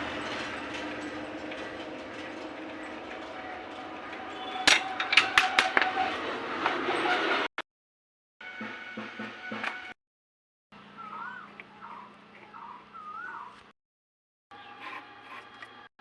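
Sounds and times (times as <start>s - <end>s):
hand tools clinking on metal: 0.0s - 6.3s.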